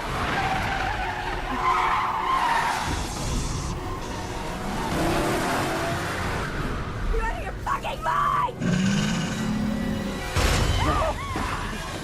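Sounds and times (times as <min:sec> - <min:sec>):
car tyres squealing: 0:00.0 - 0:06.6
car engine: 0:00.0 - 0:07.1.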